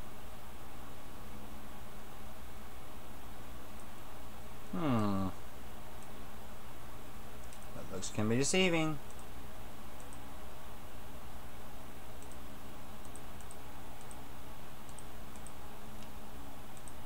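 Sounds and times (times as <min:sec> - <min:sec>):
low electrical hum and hiss: 0:00.0 - 0:17.0
computer mouse clicks: 0:07.4 - 0:07.7, 0:09.0 - 0:09.3, 0:09.9 - 0:10.3, 0:12.1 - 0:14.2, 0:14.8 - 0:17.0.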